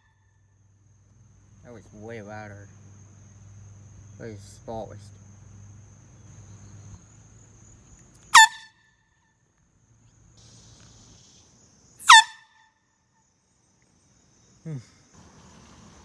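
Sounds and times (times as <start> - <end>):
air horn blasts: 8.3 - 8.8, 12.0 - 12.6.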